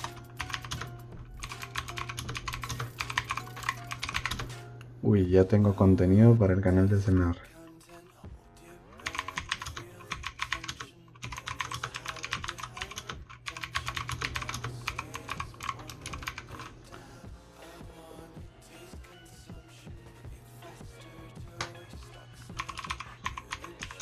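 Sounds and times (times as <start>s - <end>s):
mechanical keyboard typing: 0.0s - 4.6s, 9.0s - 16.8s, 22.5s - 24.0s.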